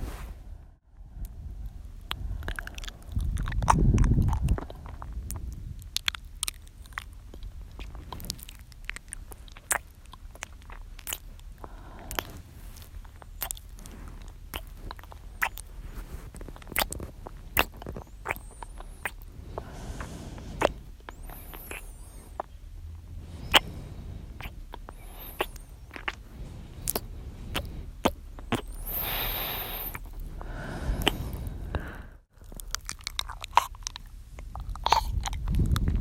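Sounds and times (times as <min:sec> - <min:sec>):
wet mouth clicks and smacks: 0:02.0 - 0:15.7, 0:16.3 - 0:22.5, 0:23.5 - 0:23.7, 0:24.4 - 0:26.2, 0:26.8 - 0:30.2, 0:31.0 - 0:31.8, 0:32.4 - 0:36.0
breath into microphone: 0:11.6 - 0:12.9, 0:18.9 - 0:22.5, 0:23.1 - 0:32.3.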